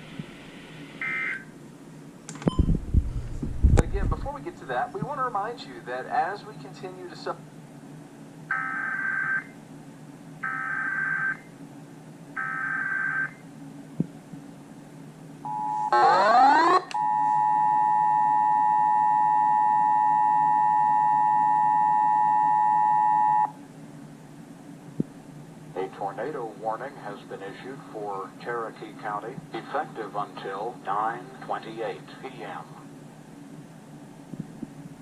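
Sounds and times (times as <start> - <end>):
two-tone attention signal: 15.5 - 23.5.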